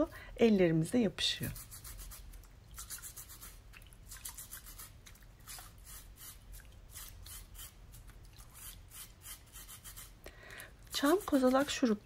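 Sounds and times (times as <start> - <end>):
brush scrubbing pine cones: 2.8 - 10.2, 10.9 - 12.0.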